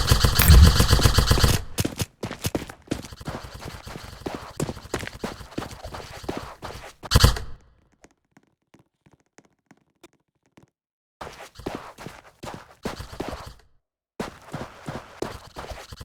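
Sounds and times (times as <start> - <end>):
sharp clicks and knocks: 0.4 - 0.9
loud bang: 0.4 - 1.0.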